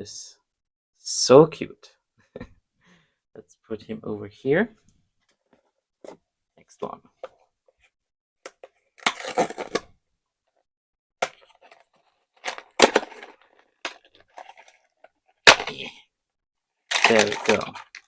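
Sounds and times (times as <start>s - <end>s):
packaging crackling and tearing: 12.4s - 14.9s, 16.9s - 18.0s.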